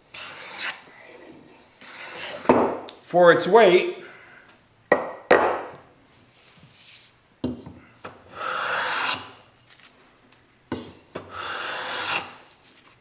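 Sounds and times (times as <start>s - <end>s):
knocks on wood: 4.9s - 5.7s.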